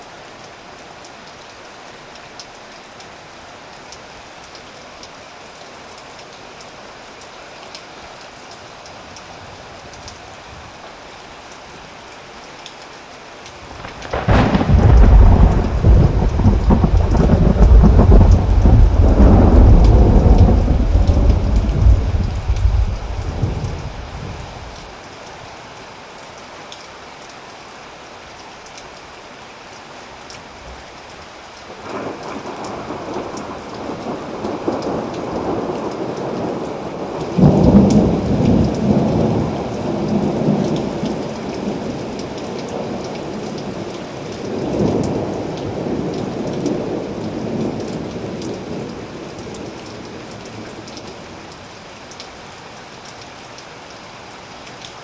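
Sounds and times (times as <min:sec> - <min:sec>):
steady rain falling: 0:00.0 - 0:55.0
thunder rolling: 0:13.8 - 0:24.4.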